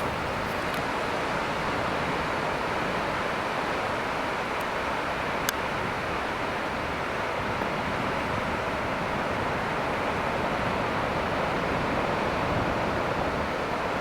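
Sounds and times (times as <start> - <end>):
wind buffeting microphone: 0.0 - 1.1, 6.8 - 14.0
ocean surf breaking: 0.0 - 14.0.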